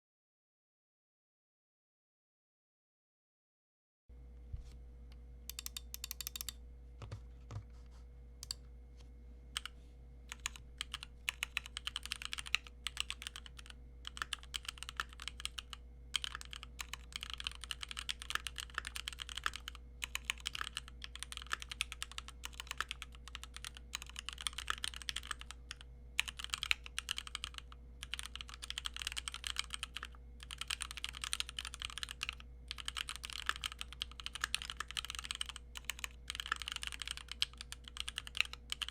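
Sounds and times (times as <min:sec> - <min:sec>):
mechanical keyboard key clacks: 0:05.5 - 0:06.5.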